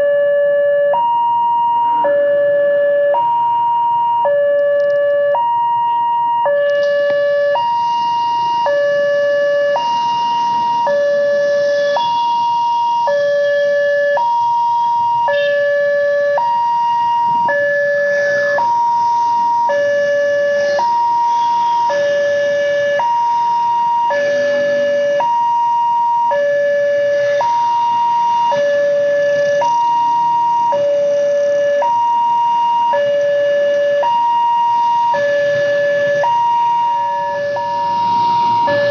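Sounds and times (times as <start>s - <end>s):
two-tone warning siren: 0.0s - 38.9s.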